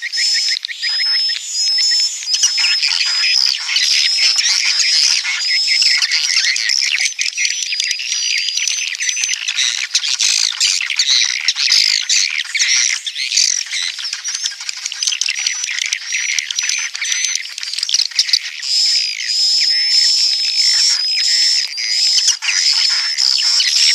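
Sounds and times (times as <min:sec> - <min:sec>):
swiftlet chirps and twitters: 0:00.0 - 0:08.0, 0:18.0 - 0:23.9.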